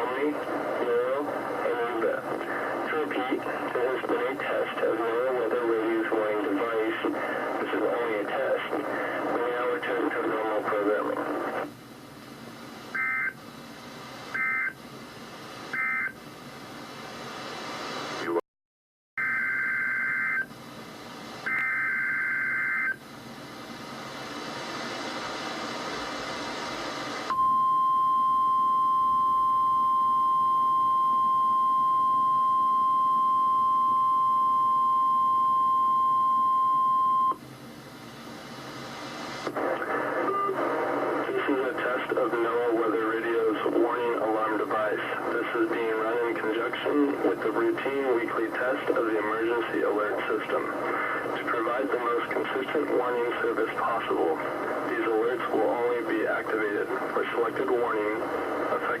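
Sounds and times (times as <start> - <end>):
radio hiss: 0.0 - 11.8, 16.7 - 18.4, 23.4 - 27.3, 38.0 - 59.0
steady warning alarm tone: 19.2 - 20.5, 21.4 - 23.0.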